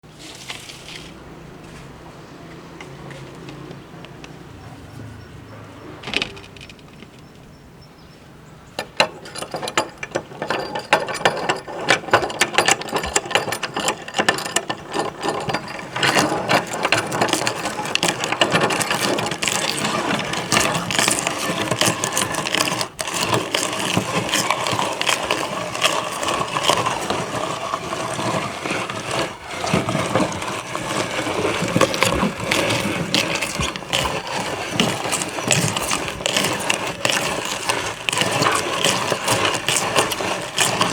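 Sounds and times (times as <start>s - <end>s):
meat grinder crunching vegetable: 11.4s - 40.9s.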